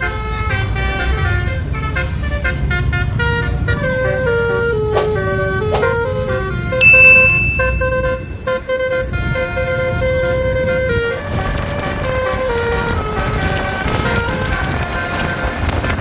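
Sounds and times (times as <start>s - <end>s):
bus horn playing a tune: 0.0s - 6.7s, 8.4s - 15.9s
high shrill tone: 6.8s - 8.4s.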